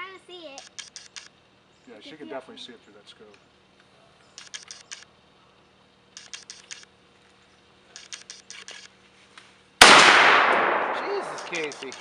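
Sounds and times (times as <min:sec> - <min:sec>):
loud rifle shot with echo: 0:09.8 - 0:12.0.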